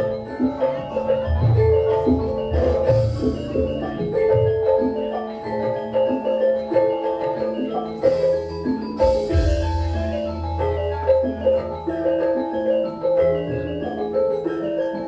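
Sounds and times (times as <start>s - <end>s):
metallophone notes ringing: 0.0s - 15.0s.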